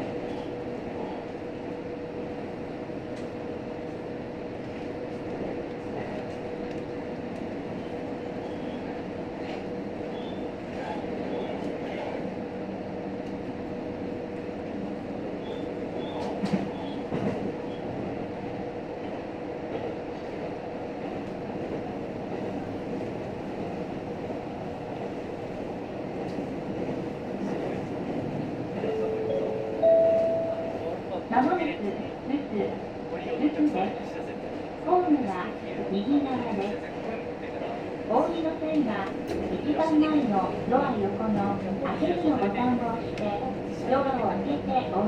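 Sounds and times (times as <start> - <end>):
train cabin rumble: 0.0 - 33.0
short onboard chime: 28.9 - 30.9.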